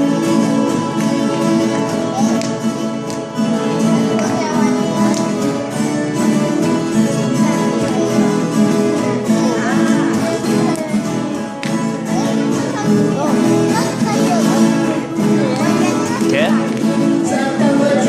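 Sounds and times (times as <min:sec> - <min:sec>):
guitar strummed and plucked: 0:00.0 - 0:18.0
people singing: 0:00.0 - 0:18.0.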